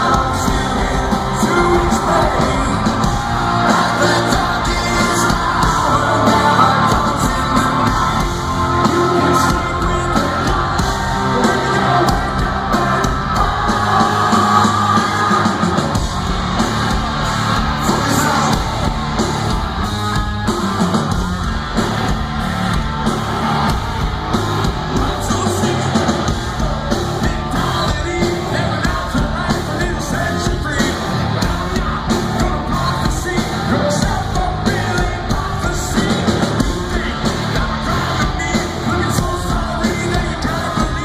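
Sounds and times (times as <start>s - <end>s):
pounding drums: 0.0s - 41.0s
rock band playing loudly: 0.0s - 41.0s
singer yelling: 0.0s - 41.0s.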